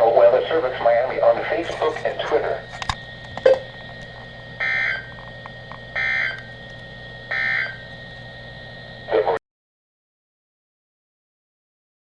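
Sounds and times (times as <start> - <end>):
faint steady tone and hum: 0.0 - 9.4
buzzy digital data bursts: 4.5 - 5.2, 5.9 - 7.9.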